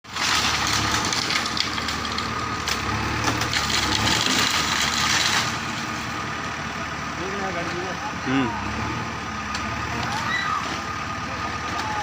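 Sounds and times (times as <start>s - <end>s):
gritty scraping and crunching: 0.0s - 6.5s.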